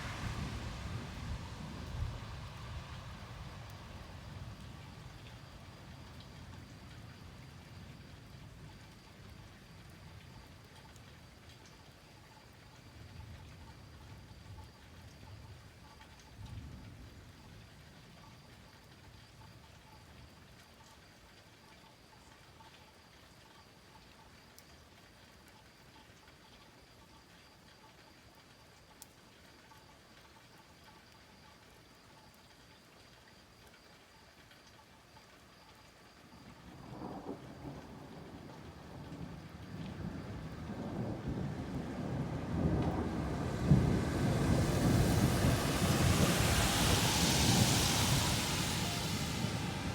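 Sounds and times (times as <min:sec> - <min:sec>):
high hiss: 0:00.0 - 0:06.1, 0:42.6 - 0:49.9
thunder rumbling: 0:00.0 - 0:06.7, 0:36.7 - 0:49.9
outdoor background hiss: 0:00.0 - 0:49.9
light ticks: 0:28.9 - 0:35.8.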